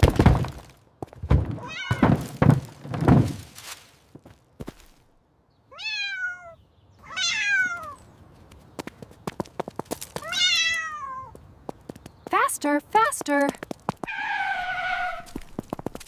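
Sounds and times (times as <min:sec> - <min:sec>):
heavy thuds: 0:00.0 - 0:03.9
cat meowing: 0:05.7 - 0:08.0, 0:10.2 - 0:11.3.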